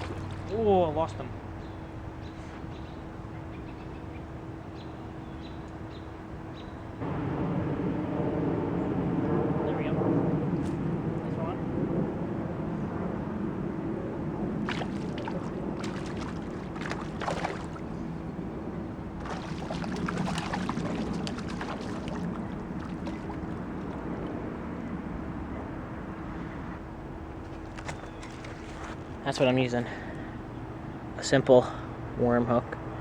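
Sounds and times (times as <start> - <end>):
river water rushing: 14.7 - 18.1, 19.2 - 24.0.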